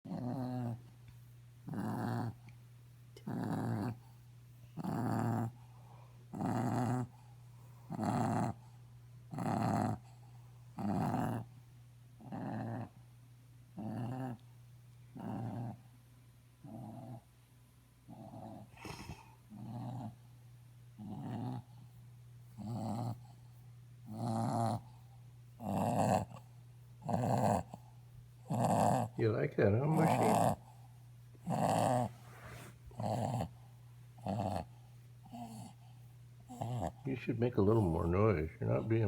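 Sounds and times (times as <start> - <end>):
dog snoring: 0.1 - 0.8, 1.6 - 2.5, 3.2 - 4.2, 4.8 - 5.6, 6.3 - 7.3, 7.9 - 10.2, 10.8 - 11.5, 12.2 - 13.0, 13.8 - 14.4, 15.1 - 15.9, 16.6 - 17.3, 18.1 - 20.2, 21.0 - 21.9, 22.5 - 23.4, 24.0 - 25.0, 25.6 - 30.8, 31.4 - 33.6, 34.2 - 39.0
low steady hum: 0.1 - 39.0.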